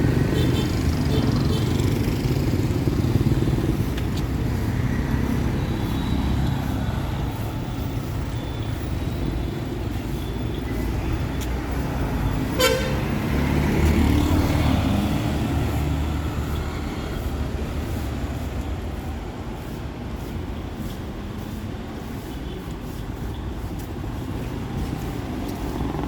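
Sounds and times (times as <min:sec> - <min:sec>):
street traffic: 0:00.0 - 0:26.0
vehicle horn toot: 0:12.5 - 0:13.1.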